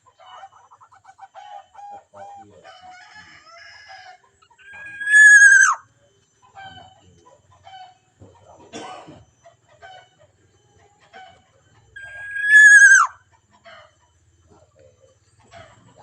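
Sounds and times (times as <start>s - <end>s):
bird harsh drawn-out call: 4.6s - 5.8s, 12.0s - 13.2s.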